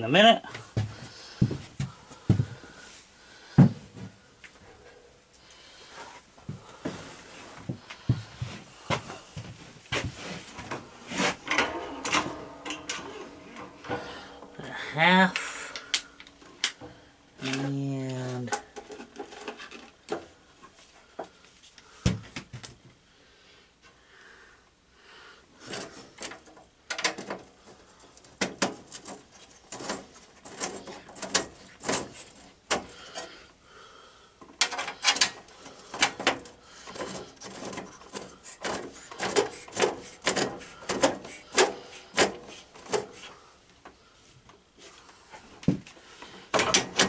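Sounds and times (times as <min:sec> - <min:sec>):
hand tools and metal parts clanking: 0:08.4 - 0:20.8, 0:25.6 - 0:33.4, 0:34.4 - 0:44.0, 0:44.8 - 0:47.0.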